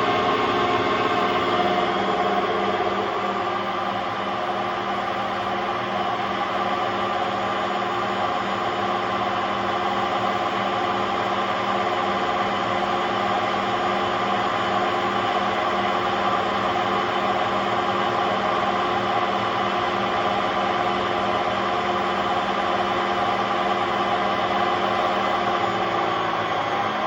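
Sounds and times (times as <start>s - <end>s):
washing machine drum spinning: 0.0s - 5.2s.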